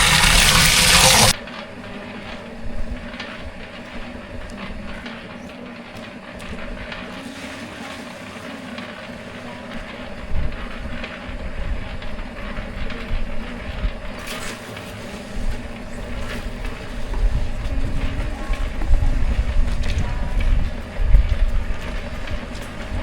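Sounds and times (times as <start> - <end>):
machine motor running: 0.0 - 23.0
wind rumble on microphone: 10.0 - 14.4, 15.3 - 23.0.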